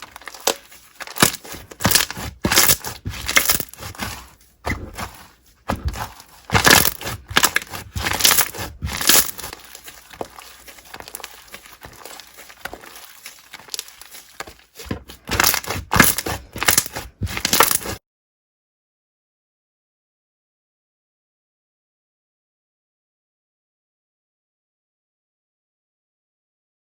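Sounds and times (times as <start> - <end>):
hands squishing slime: 0.0 - 18.0.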